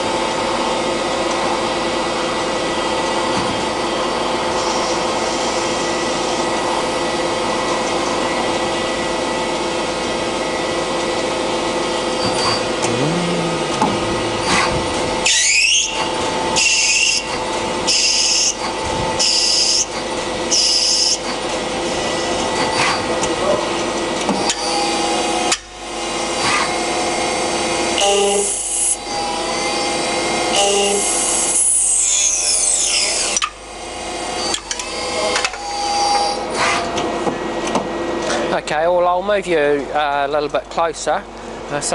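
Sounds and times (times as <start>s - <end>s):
lathe machine hum: 8.3s - 18.5s
rising sweep: 12.8s - 15.5s.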